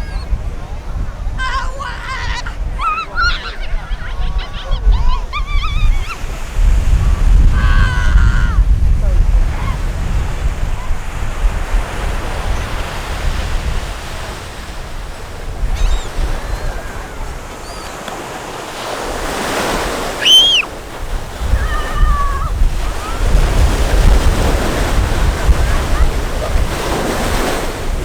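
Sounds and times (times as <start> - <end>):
surf rushing: 0.0 - 28.0
wind buffeting microphone: 0.0 - 28.0
wavering call: 15.8 - 18.1, 19.6 - 20.8
high-pitched arching call: 20.2 - 20.7.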